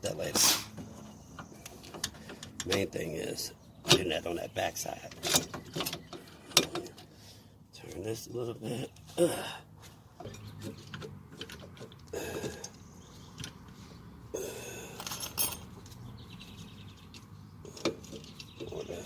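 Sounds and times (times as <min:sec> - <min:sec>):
metallic clinks and scrapes of brake parts: 0:14.8 - 0:16.1.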